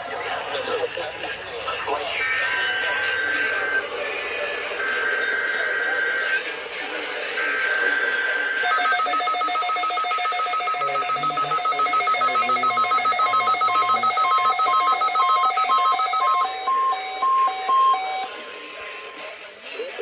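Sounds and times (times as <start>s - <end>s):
rapid electronic alarm beeps: 7.7s - 18.3s
slower electronic alarm beeps: 7.9s - 18.3s.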